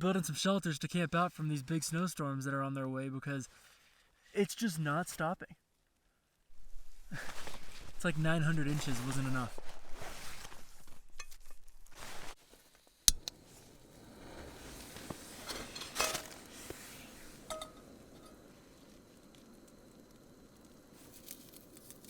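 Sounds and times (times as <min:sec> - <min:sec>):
faint hiss: 0:11.8 - 0:22.0
camp cookware knocking: 0:17.5 - 0:17.9
cookware clinking: 0:17.5 - 0:17.9.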